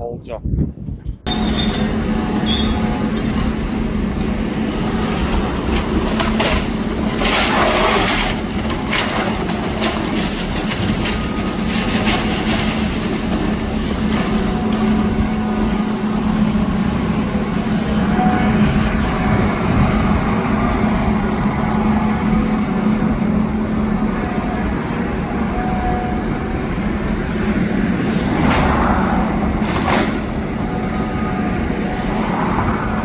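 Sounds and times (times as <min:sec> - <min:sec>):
wind rumbling on microphone: 0:00.0 - 0:33.0
excavator running: 0:01.3 - 0:33.0
crunching and clattering debris: 0:04.9 - 0:17.4, 0:29.6 - 0:32.1.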